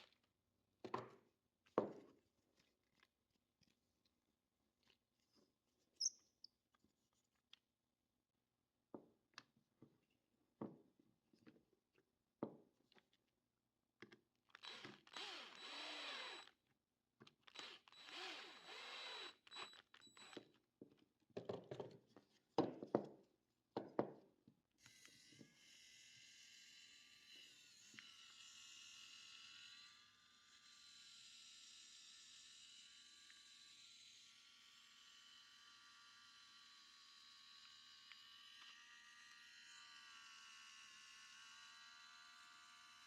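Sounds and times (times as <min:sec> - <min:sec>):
small power tool whining: 0:14.6 - 0:16.5, 0:17.5 - 0:20.4.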